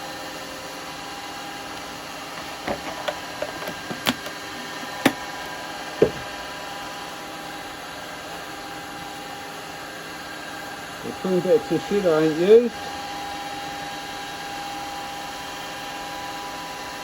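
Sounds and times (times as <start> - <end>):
light knocks and clicks: 6.0 - 6.3
wood lathe humming: 10.9 - 13.6.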